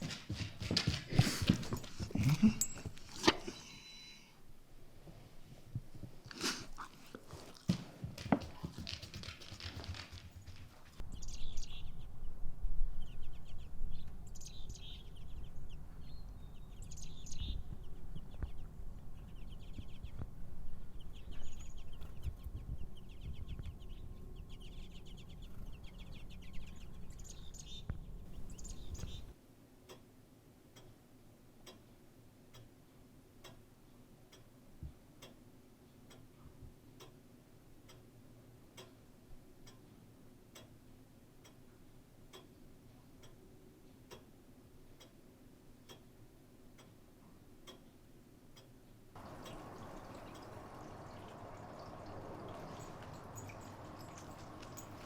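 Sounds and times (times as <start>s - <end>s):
clock ticking: 31.6s - 31.9s, 47.6s - 47.8s.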